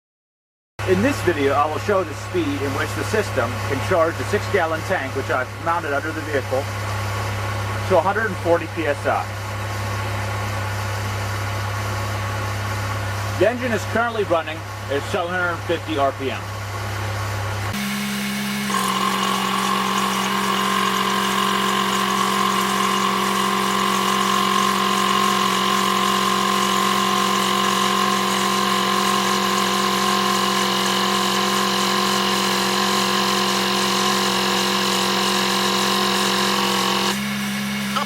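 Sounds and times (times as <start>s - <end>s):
air compressor whining: 0.8s - 38.0s.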